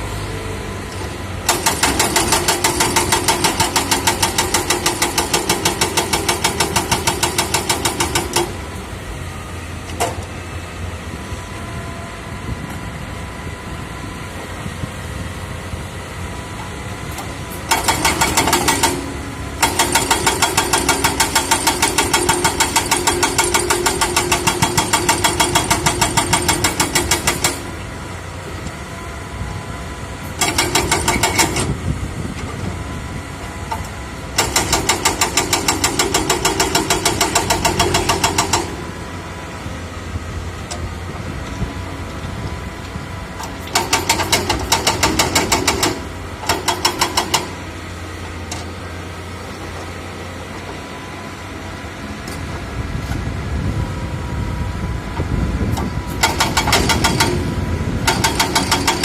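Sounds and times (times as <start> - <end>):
excavator engine running: 0.0 - 59.0
rapid hammering: 58.1 - 59.0.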